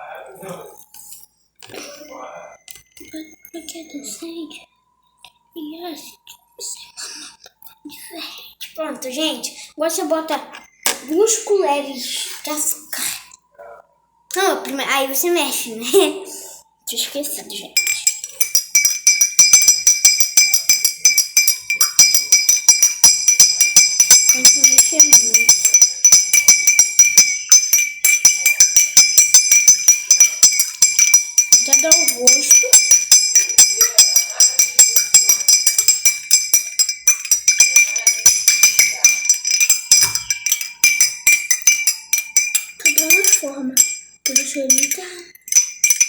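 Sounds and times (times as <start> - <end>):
spoon clinking in a glass: 17.8 - 46.0.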